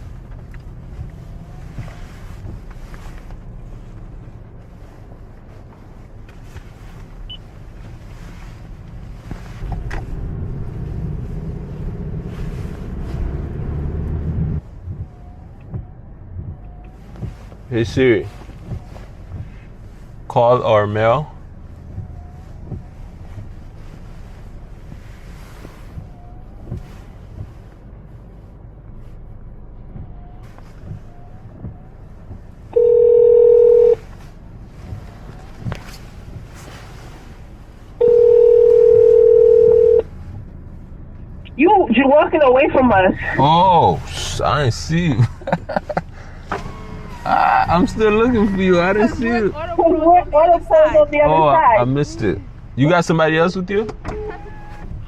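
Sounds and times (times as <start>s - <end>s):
light bumps: 0.0s - 20.4s, 33.9s - 38.0s, 40.1s - 55.0s
car cabin engine and tyre rumble: 0.0s - 55.0s
phone ringing tone: 32.8s - 34.0s, 38.0s - 40.0s.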